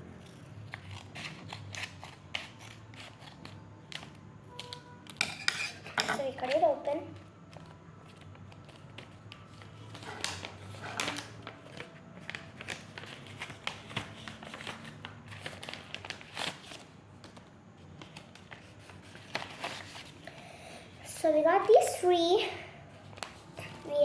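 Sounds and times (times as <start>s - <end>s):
packaging crinkling and rustling: 6.5s - 20.3s.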